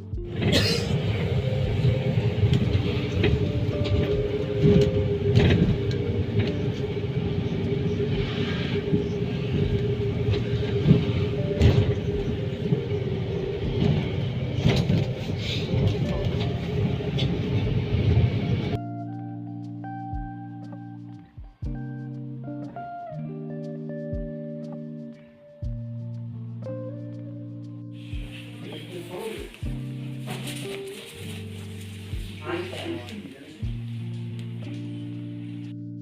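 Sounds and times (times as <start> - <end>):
constant whine: 0.0 - 18.8
vehicle low rumble: 0.0 - 18.8
knocks and clicks: 0.2 - 18.8.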